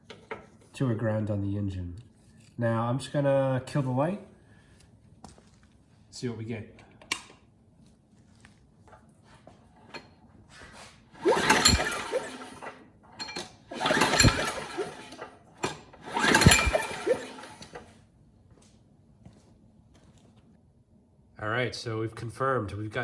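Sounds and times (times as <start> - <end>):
mower engine turning over: 11.2 - 18.0
recoil starter pulls: 11.2 - 18.0.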